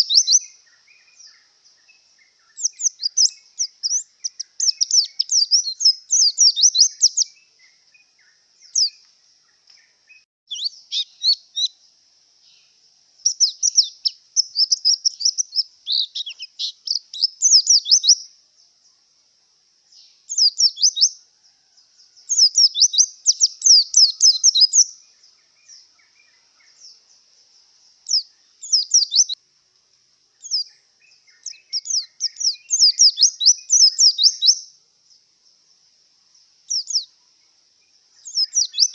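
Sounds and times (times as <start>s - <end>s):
bird twittering: 0.0s - 9.0s, 9.8s - 11.8s, 12.4s - 18.3s, 20.0s - 21.2s, 22.3s - 27.0s, 28.1s - 29.4s, 30.4s - 34.7s, 36.7s - 37.1s, 38.2s - 38.9s.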